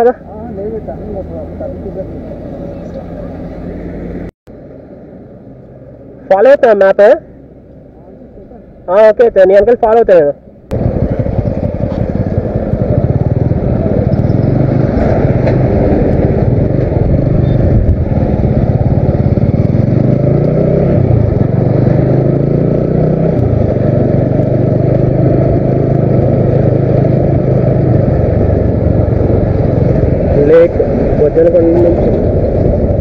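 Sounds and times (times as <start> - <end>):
motorcycle engine running: 10.7 - 33.0
wind rushing over microphone: 10.7 - 33.0.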